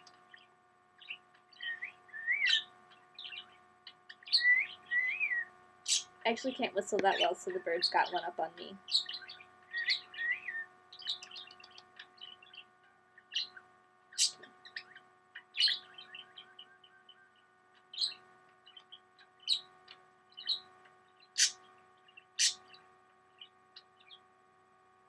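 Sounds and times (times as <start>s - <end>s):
steady electrical hum: 0.0s - 25.0s
cockatiel chirping and whistling: 1.6s - 3.4s.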